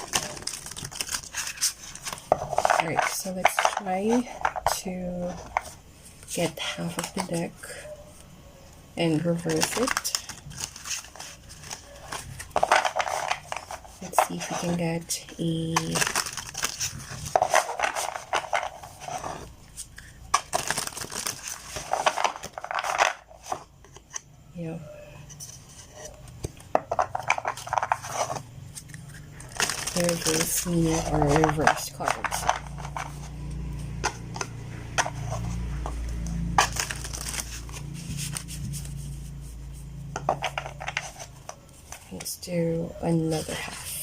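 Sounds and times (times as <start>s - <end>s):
cards being shuffled: 0.0s - 7.5s, 9.2s - 24.2s, 25.4s - 42.2s.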